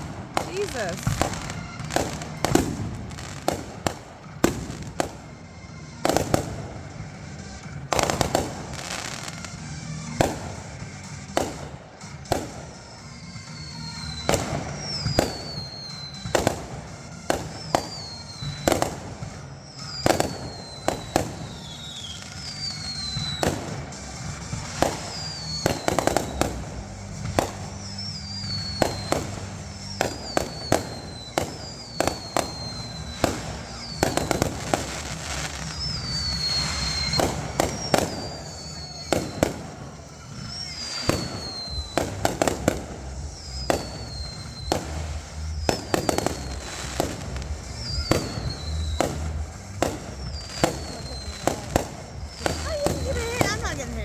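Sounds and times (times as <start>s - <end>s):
fireworks bangs: 0.0s - 54.0s
falling high whistles: 12.2s - 54.0s.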